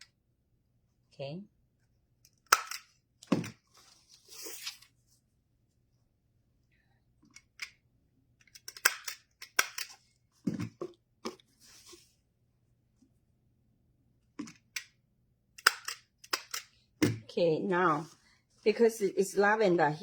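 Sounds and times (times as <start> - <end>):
scissors snipping ribbon: 15.6 - 17.2.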